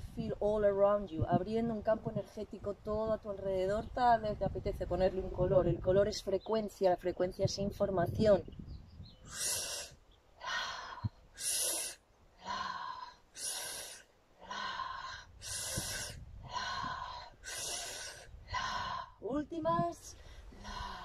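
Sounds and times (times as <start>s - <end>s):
strong rhythmic breathing: 9.2s - 19.2s, 20.2s - 21.0s.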